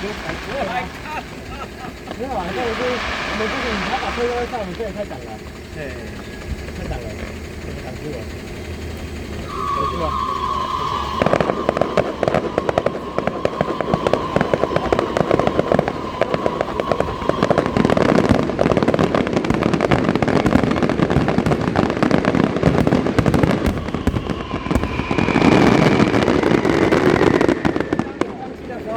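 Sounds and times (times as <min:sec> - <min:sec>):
steady tone: 0:00.0 - 0:28.8
firecrackers crackling: 0:00.0 - 0:28.9
higher tone: 0:09.0 - 0:20.3.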